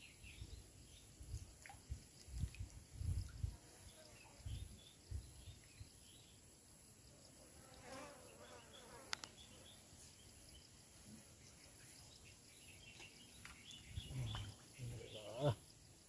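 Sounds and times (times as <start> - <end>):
faint high insect hum: 0.0 - 16.0
flying insect buzzing past: 7.4 - 9.8.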